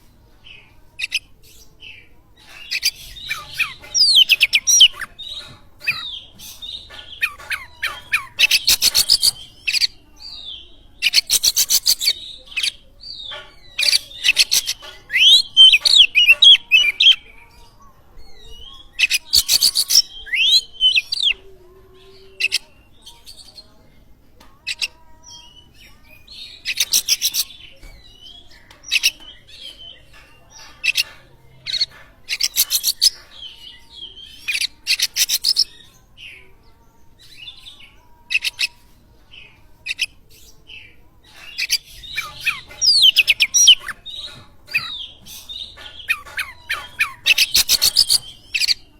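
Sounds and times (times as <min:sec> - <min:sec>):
bird singing rattling and whistling: 0:02.4 - 0:10.0, 0:11.0 - 0:17.6, 0:18.2 - 0:21.4, 0:24.6 - 0:36.4, 0:39.8 - 0:48.9.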